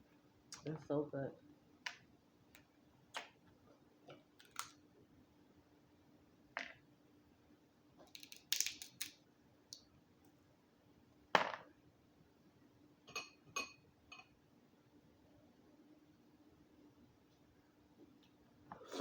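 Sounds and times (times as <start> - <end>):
crab shell cracking: 4.4 - 4.8, 8.1 - 9.2.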